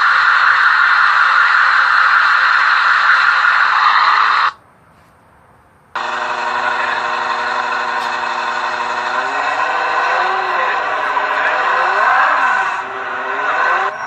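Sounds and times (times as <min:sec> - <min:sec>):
loud steady noise: 0:00.0 - 0:04.6, 0:05.9 - 0:14.0
vehicle engine running: 0:06.0 - 0:14.0.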